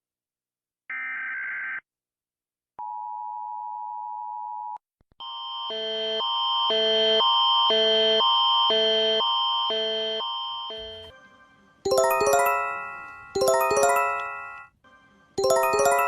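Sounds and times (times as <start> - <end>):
bell-like chime: 11.9 - 14.7, 15.4 - 16.0.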